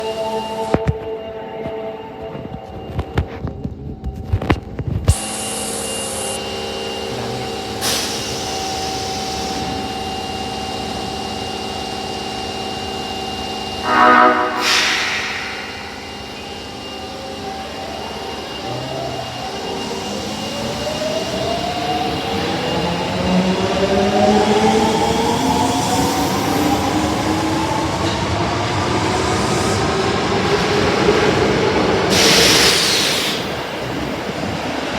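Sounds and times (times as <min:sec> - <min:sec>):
train electrical hum: 0:00.0 - 0:28.2
rail noise: 0:00.0 - 0:34.9
train horn: 0:13.8 - 0:16.3
short hiss: 0:14.4 - 0:16.0.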